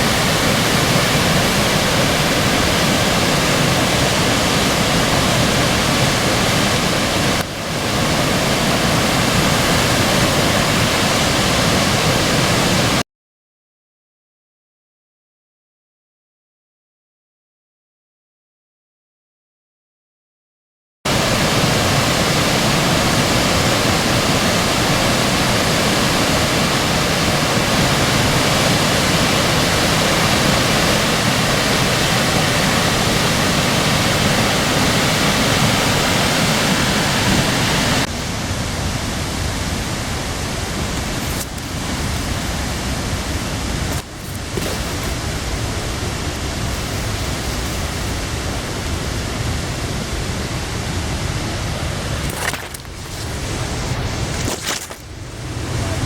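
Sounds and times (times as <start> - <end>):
waterfall pouring: 21.1 - 38.1.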